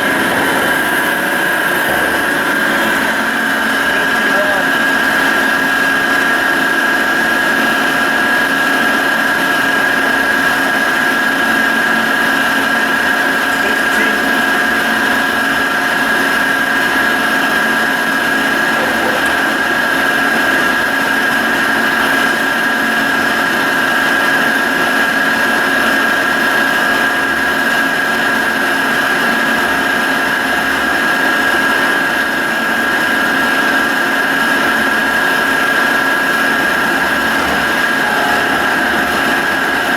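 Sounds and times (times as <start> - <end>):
drill press running: 0.0 - 39.9
high whine: 35.9 - 39.9.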